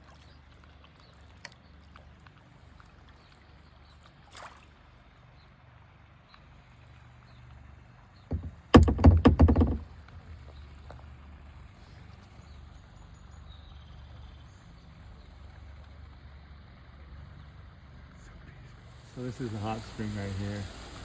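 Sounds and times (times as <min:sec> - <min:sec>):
kayak paddle knocking: 0:08.3 - 0:10.5.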